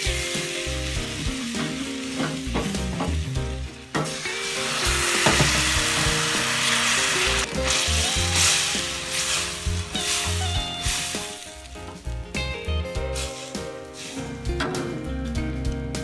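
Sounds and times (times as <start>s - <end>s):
flour sizzling in a pan: 0.0s - 12.4s, 13.0s - 14.5s.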